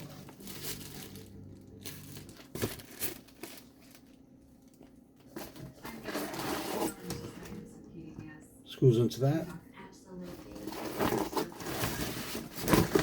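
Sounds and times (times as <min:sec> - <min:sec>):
packing material crinkling: 0:00.0 - 0:07.0, 0:10.4 - 0:13.0.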